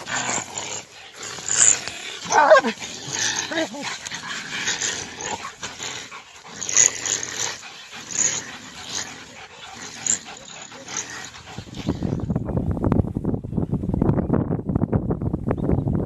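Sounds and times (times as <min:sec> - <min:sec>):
harsh dog-like animal calls: 0:00.0 - 0:12.3
steady low rumbling noise: 0:00.0 - 0:16.0.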